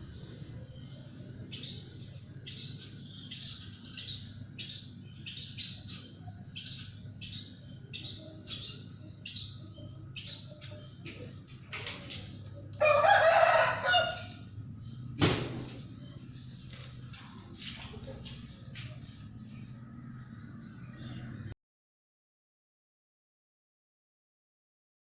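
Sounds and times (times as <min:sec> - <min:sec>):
small bird chirping: 0:00.0 - 0:12.8
low background hum: 0:00.0 - 0:21.6.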